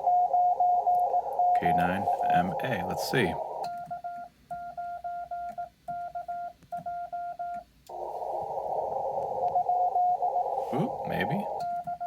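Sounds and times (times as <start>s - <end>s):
faint morse signal: 0.0s - 12.0s
morse code sidetone beeps: 0.0s - 12.0s
radio receiver hiss: 0.9s - 3.8s, 7.9s - 11.7s.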